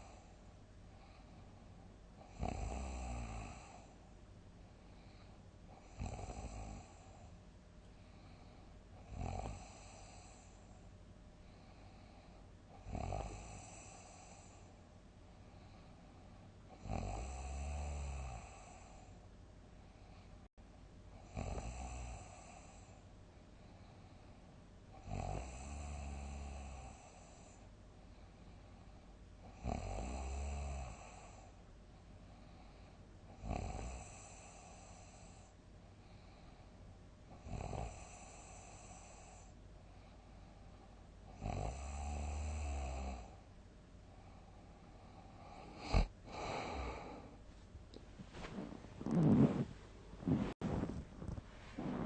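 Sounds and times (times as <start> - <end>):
quiet breathing: 0.0 - 29.7, 30.6 - 52.0
loud deep snoring: 2.2 - 3.9, 5.8 - 7.3, 9.0 - 10.6, 12.8 - 14.6, 16.7 - 19.0, 21.2 - 22.9, 25.0 - 27.6, 29.5 - 31.4, 33.4 - 35.5, 37.4 - 39.5, 41.4 - 43.4, 45.4 - 47.4, 48.3 - 52.0.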